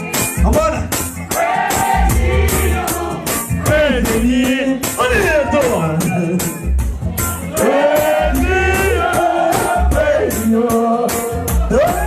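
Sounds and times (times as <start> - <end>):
reggae song over sound system: 0.0 - 12.0
deep bass: 2.0 - 12.0.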